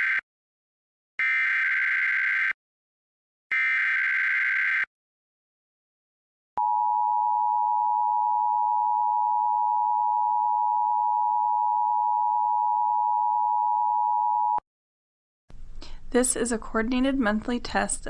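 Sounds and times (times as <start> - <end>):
two-tone alarm signal: 6.6 - 14.6.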